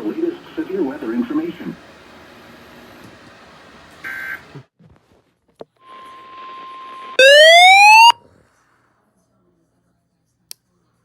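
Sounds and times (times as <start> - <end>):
siren-like rising alert tone: 7.2 - 8.2.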